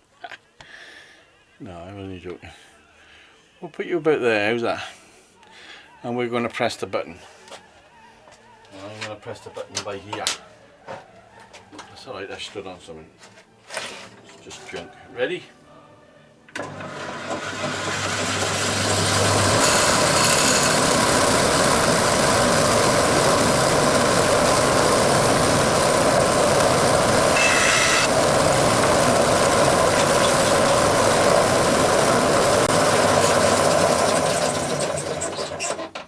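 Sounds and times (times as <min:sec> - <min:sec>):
bandsaw motor whirring: 0:16.6 - 0:35.8.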